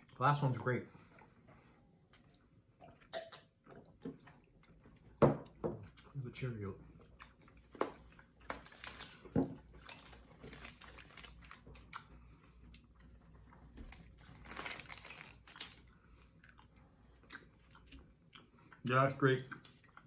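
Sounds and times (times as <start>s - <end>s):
candy wrappers crinkling: 8.4s - 12.0s, 13.9s - 16.0s.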